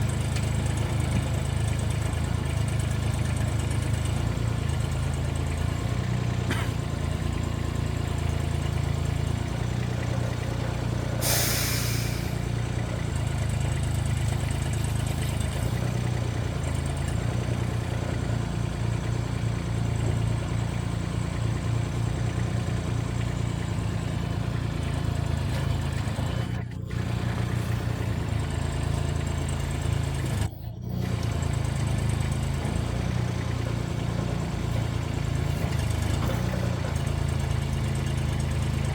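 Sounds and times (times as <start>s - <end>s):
brief hiss: 11.2s - 12.4s.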